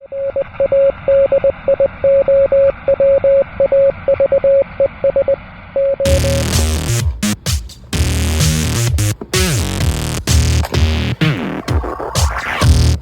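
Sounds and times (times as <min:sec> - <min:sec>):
morse code tone: 0:06.0 - 0:07.4
loud electronic synth sound: 0:06.1 - 0:13.0.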